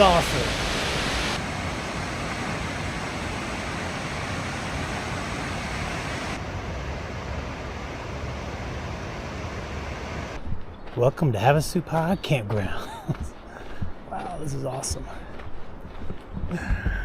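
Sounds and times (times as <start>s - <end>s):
waterfall rushing: 0.0s - 10.4s.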